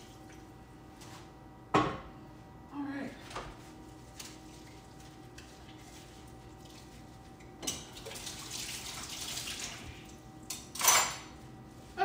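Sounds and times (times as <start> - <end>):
tap water running: 4.2 - 10.8.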